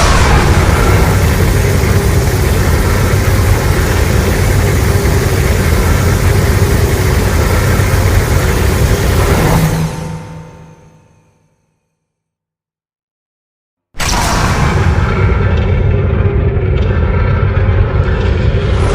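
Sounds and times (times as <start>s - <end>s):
deep monster rumble: 0.0s - 10.2s, 14.0s - 18.9s.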